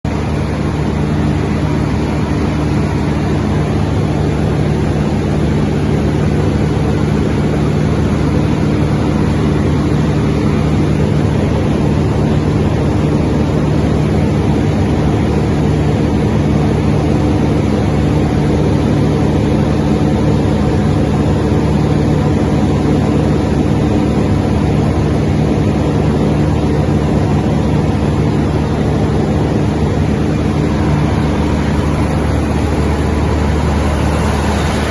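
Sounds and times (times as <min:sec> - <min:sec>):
diesel generator drone: 0:00.0 - 0:34.9.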